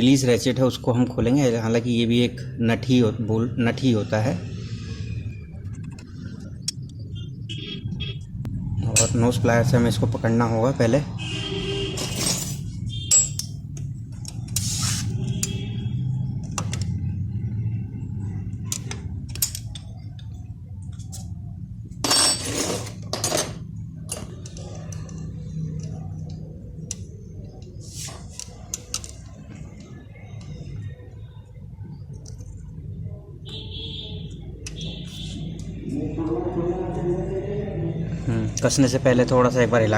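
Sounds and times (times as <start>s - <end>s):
hand tools clinking on metal: 12.0s - 13.6s
metal tool scraping: 12.0s - 13.6s, 14.5s - 15.6s, 22.1s - 23.6s.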